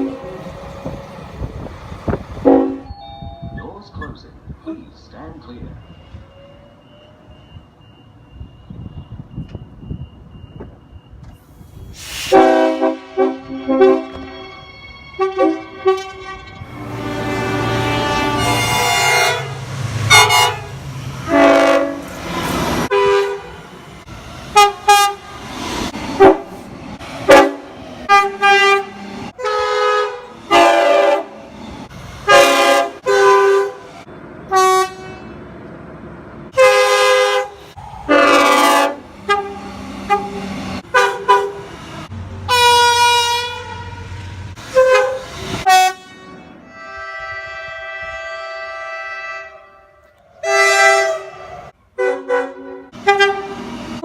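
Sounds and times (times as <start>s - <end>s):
train horn blasts: 2.4s - 3.0s, 12.2s - 14.6s, 15.2s - 22.1s, 22.9s - 23.6s, 24.6s - 25.2s, 27.3s - 31.4s, 32.2s - 33.9s, 34.5s - 35.4s, 36.5s - 41.6s, 42.5s - 53.6s.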